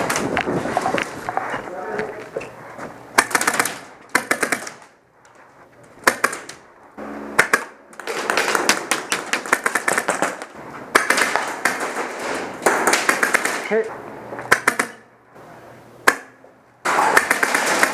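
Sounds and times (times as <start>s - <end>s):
airsoft guns firing bursts: 3.2s - 4.9s, 6.0s - 6.6s, 7.4s - 12.0s, 12.6s - 13.8s, 14.5s - 15.0s, 16.1s - 17.9s.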